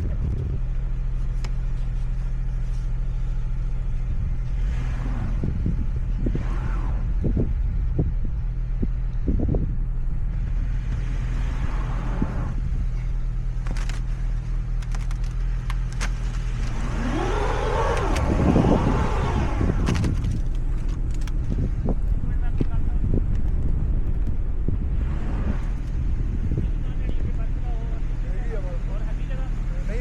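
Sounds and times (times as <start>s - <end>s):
car engine humming: 0.0s - 30.0s
engine whine: 0.0s - 30.0s.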